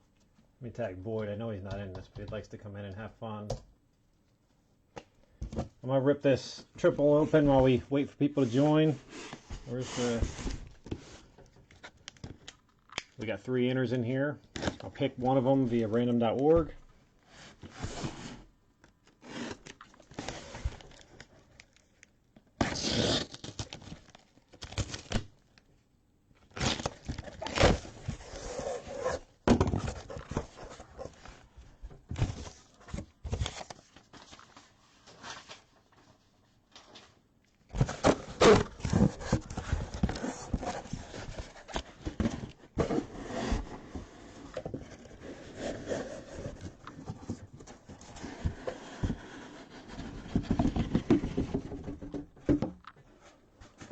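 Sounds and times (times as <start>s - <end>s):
boxes scraping and rustling: 6.6s - 11.4s, 17.3s - 18.5s, 19.2s - 21.2s, 26.6s - 35.7s, 37.7s - 53.9s
cardboard tearing: 19.2s - 21.3s, 22.6s - 25.2s, 26.5s - 29.3s.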